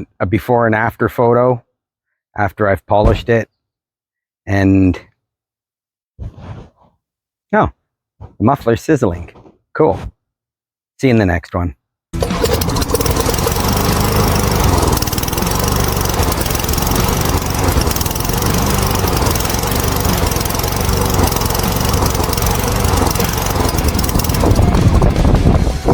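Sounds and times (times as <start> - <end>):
push mower engine running: 12.2 - 25.9.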